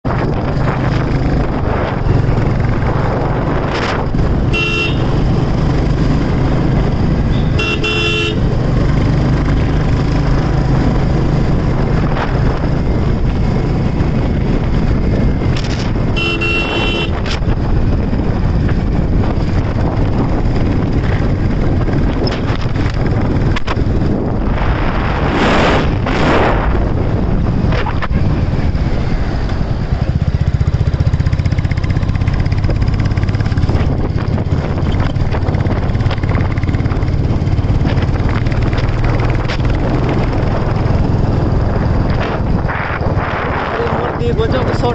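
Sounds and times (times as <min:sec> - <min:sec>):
motorcycle engine running: 0:00.0 - 0:44.9
road and wind noise: 0:00.0 - 0:44.9
vehicle horn honking: 0:04.5 - 0:05.2, 0:07.3 - 0:08.6, 0:16.1 - 0:17.2.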